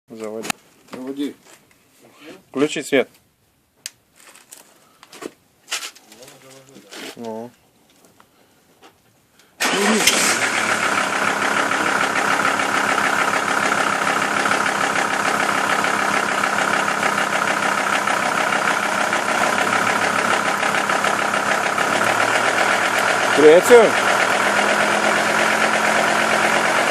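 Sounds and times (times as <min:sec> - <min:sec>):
car engine starting and idling: 0:09.6 - 0:26.9.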